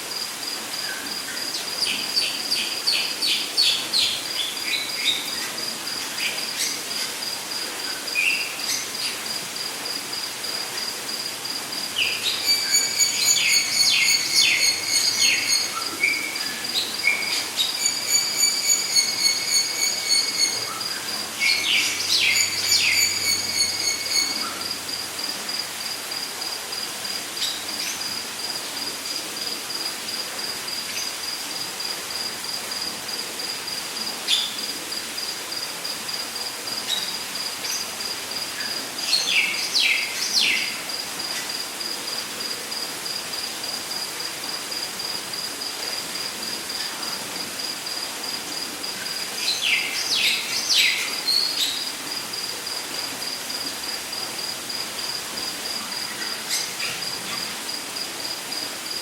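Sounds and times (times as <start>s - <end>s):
steady hiss: 0.0s - 59.0s
insect trilling: 10.8s - 26.8s
bird chirps: 12.3s - 16.2s, 17.0s - 24.5s.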